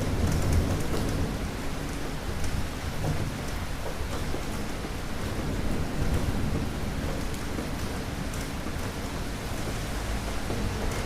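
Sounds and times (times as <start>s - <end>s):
low rumble of thunder: 0.0s - 3.5s, 5.1s - 9.0s
steady rain falling: 0.0s - 11.0s.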